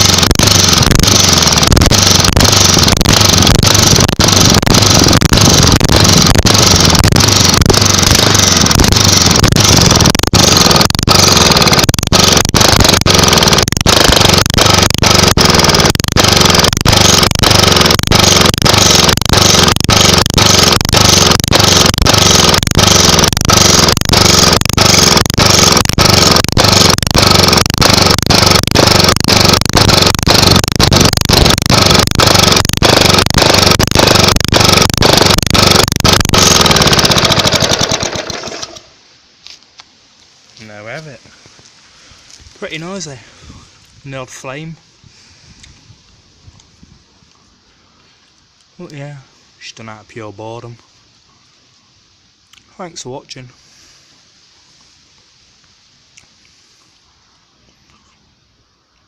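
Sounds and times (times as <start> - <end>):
lawnmower engine running loud: 0.0 - 39.0.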